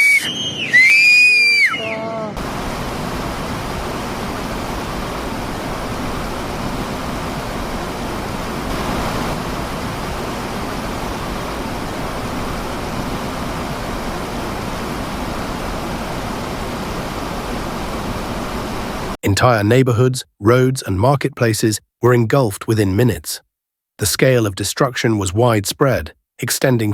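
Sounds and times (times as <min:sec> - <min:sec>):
rushing floodwater: 0:02.4 - 0:19.2.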